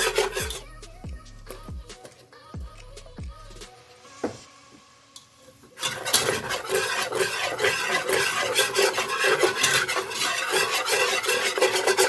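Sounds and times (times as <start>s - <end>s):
whisk scraping a pot: 0.0s - 0.6s, 5.8s - 12.0s.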